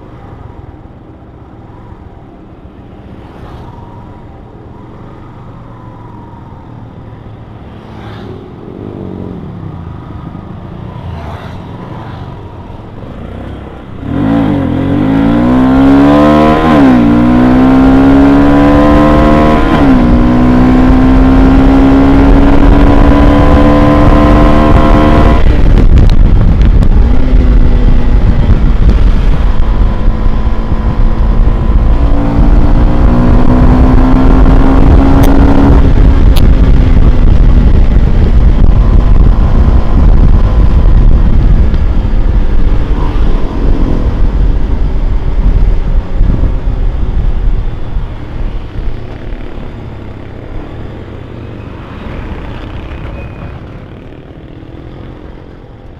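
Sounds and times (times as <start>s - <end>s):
motorcycle engine revving: 13.2s - 55.8s.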